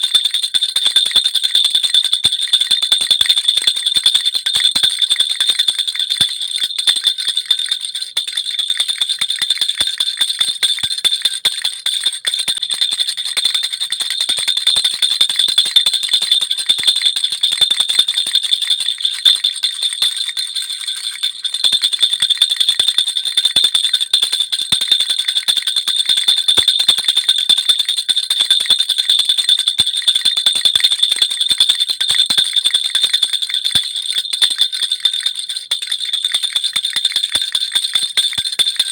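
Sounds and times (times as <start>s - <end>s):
baby rattle jingling: 2.4s - 23.6s, 32.2s - 38.9s.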